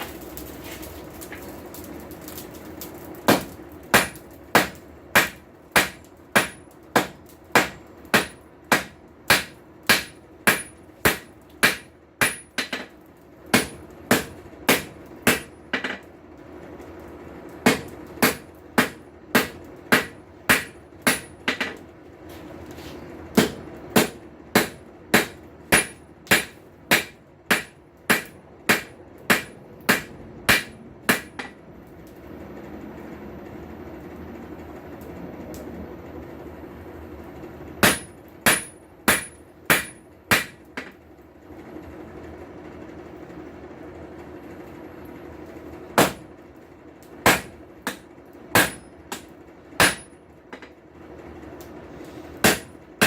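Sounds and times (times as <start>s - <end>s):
steady low hum: 0.0s - 53.0s
hammer striking steel on anvil: 3.3s - 16.0s, 17.7s - 21.8s, 23.4s - 31.6s, 37.8s - 41.0s, 46.0s - 46.2s, 47.3s - 50.7s, 52.4s - 52.7s.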